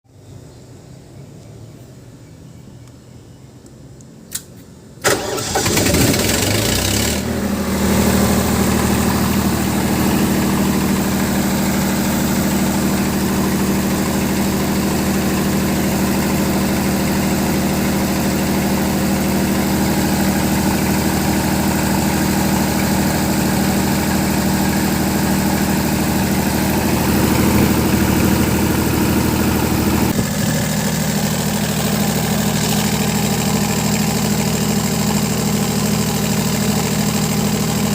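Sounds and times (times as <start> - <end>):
generator engine idling: 5.0 - 37.9.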